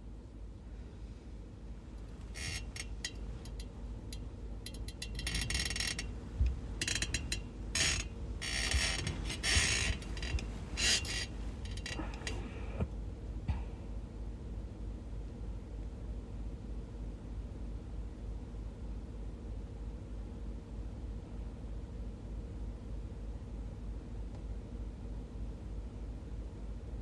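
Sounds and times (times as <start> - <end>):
bedding rustling: 6.1 - 12.8.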